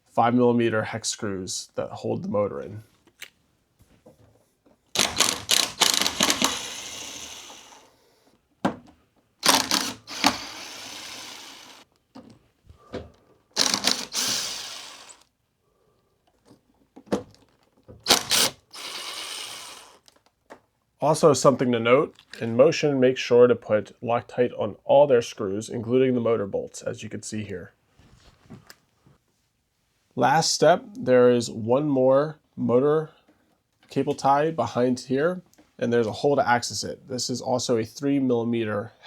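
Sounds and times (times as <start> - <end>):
power driver clicking and whirring: 5.0 - 7.9, 9.4 - 11.8, 13.6 - 15.2, 18.0 - 20.1.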